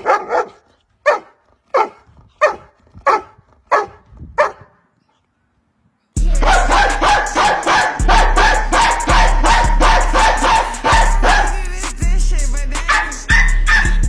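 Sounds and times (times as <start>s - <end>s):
dog barking: 0.0s - 4.8s, 6.4s - 11.6s, 12.9s - 14.0s
loud music: 6.2s - 14.0s.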